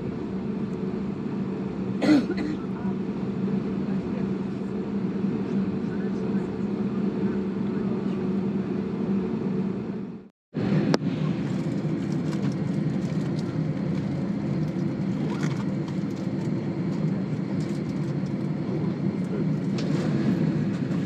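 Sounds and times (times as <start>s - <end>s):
airplane cabin hum: 0.0s - 21.0s.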